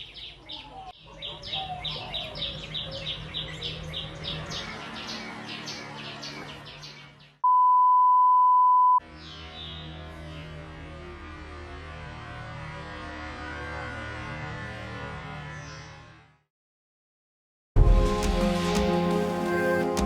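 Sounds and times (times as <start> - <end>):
steady electronic beep: 7.4 - 9.0.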